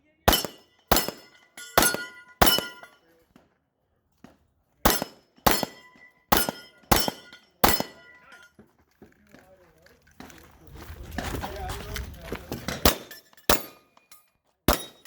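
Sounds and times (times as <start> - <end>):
gunshots: 0.3 - 3.0, 4.9 - 8.4, 12.7 - 13.8, 14.7 - 15.0
steel plate ringing: 0.3 - 3.0, 4.9 - 8.5, 14.7 - 15.0.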